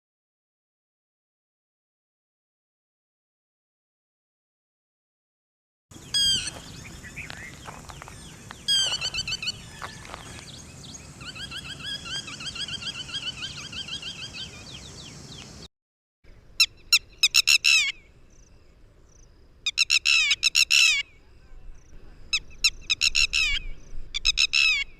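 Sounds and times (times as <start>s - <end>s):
lapwing calls: 6.0s - 15.6s, 16.6s - 18.5s, 19.6s - 24.9s.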